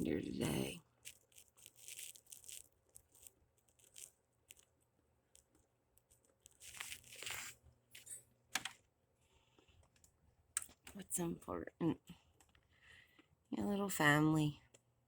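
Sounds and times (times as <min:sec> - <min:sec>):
rustling crunch: 0:00.0 - 0:08.2.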